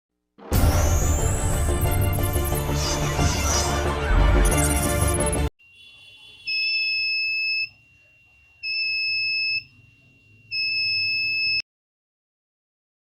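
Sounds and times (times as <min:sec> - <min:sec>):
piezo buzzer beeping: 0:04.5 - 0:11.6
faint steady tone: 0:05.6 - 0:11.6.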